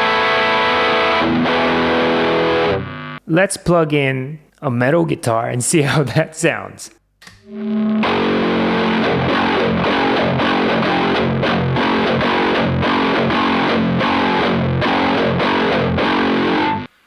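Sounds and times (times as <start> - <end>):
distorted electric guitar riff: 0.0 - 3.3, 7.4 - 17.0.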